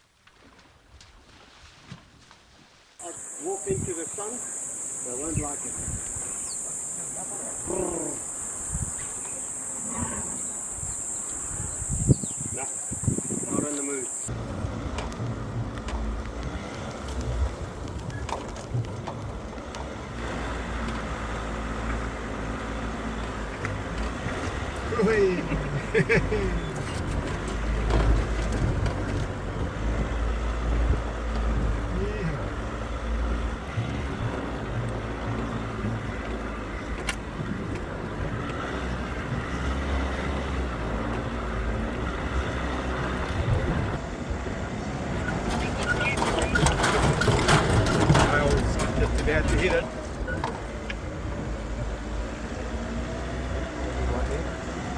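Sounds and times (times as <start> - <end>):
vehicle engine driving on sand: 3.0 - 54.9
knocks and rattles: 25.7 - 31.9, 45.1 - 51.4.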